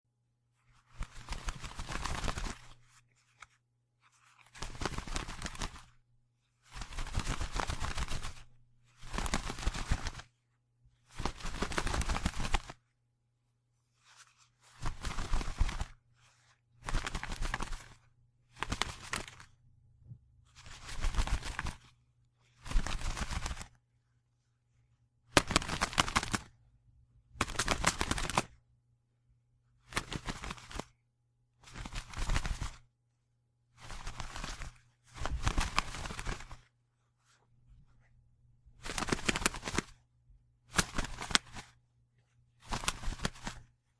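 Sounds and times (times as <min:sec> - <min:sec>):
bird wings flapping: 0:00.8 - 0:03.5, 0:04.1 - 0:06.0, 0:06.6 - 0:10.4, 0:11.1 - 0:12.8, 0:14.1 - 0:19.6, 0:20.5 - 0:21.9, 0:22.5 - 0:23.8, 0:25.3 - 0:26.6, 0:27.4 - 0:28.6, 0:29.8 - 0:30.9, 0:31.6 - 0:32.9, 0:33.8 - 0:36.7, 0:38.8 - 0:40.0, 0:40.7 - 0:41.8, 0:42.6 - 0:43.7.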